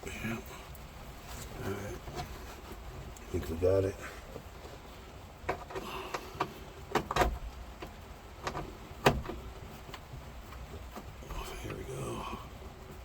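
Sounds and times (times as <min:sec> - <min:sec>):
sharp clicks and knocks: 0:05.4 - 0:11.8.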